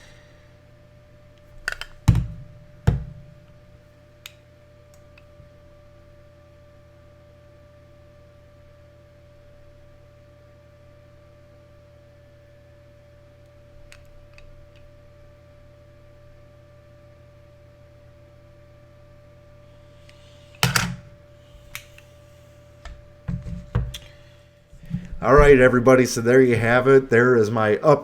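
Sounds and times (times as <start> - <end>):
low electrical hum: 0.0 - 28.0
handling knocks and bumps: 2.1 - 3.4, 24.8 - 26.0.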